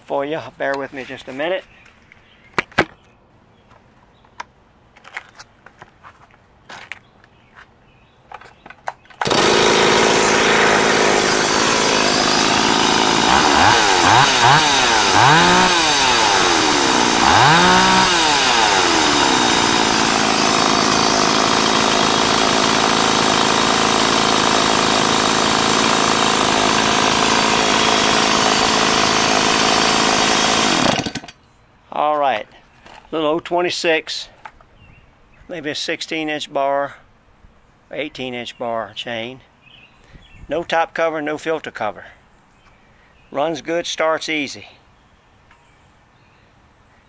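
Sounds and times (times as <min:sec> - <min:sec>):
man talking: 0:00.0 - 0:01.7, 0:31.9 - 0:34.4, 0:35.5 - 0:37.0, 0:37.9 - 0:39.5, 0:40.5 - 0:42.2, 0:43.3 - 0:44.8
chainsaw idling and revving: 0:09.2 - 0:31.3.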